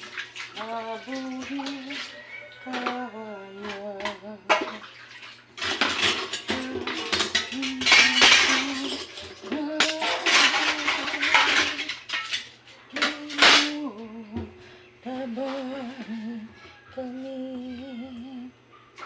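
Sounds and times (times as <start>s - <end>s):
person humming a slow tune: 0.6s - 4.8s, 6.5s - 11.9s, 12.9s - 18.7s
dishes and cutlery clattering: 1.2s - 14.5s.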